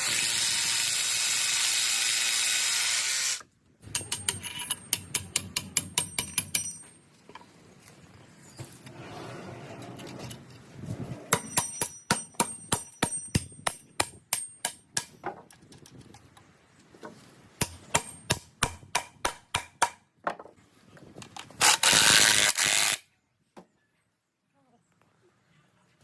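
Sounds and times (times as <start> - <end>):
hammer striking nails: 11.3 - 15.3, 17.6 - 20.0.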